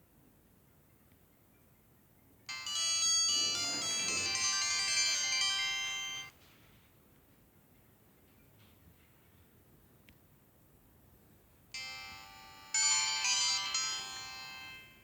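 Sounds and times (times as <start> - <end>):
mobile phone ringtone melody: 2.5 - 6.3, 11.8 - 15.0.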